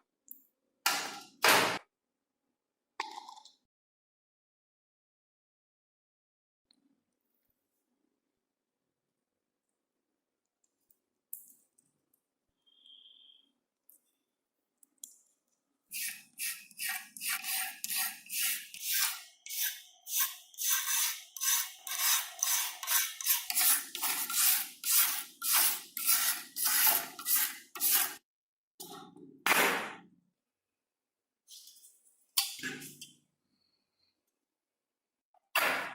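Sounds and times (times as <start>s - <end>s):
hand rasping strokes: 16.0s - 28.2s.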